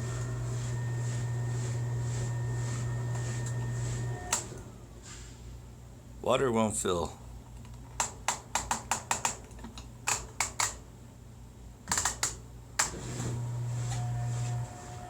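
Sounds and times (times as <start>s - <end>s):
washing machine low hum: 0.0s - 5.0s, 12.9s - 15.0s.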